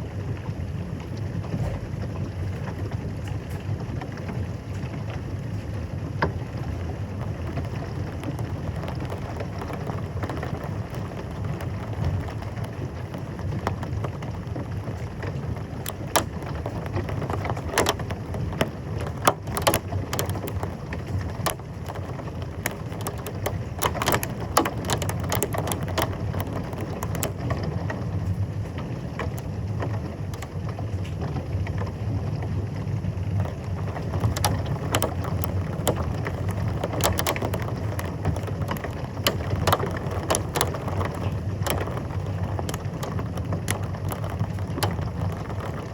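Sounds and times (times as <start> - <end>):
heavy rain pouring: 0.0 - 45.9
sharp ticks of impacts: 15.8 - 27.6, 30.3 - 30.6, 33.5 - 45.9.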